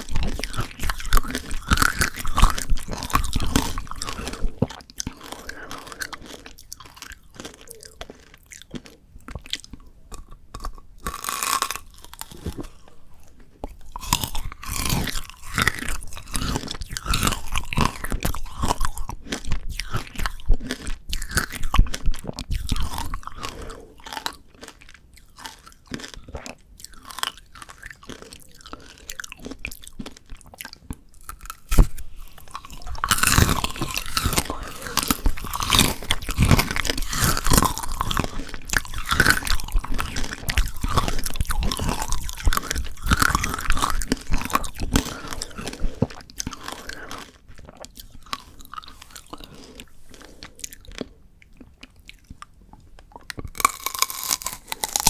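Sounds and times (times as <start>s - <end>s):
crunching and chewing candy: 0.0s - 55.0s
sharp candy crack: 53.3s - 55.0s.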